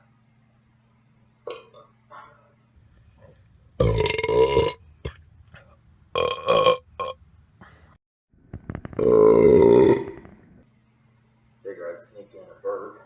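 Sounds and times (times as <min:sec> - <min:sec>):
man burping loudly: 0:03.8 - 0:05.2, 0:06.2 - 0:07.2, 0:09.0 - 0:10.2.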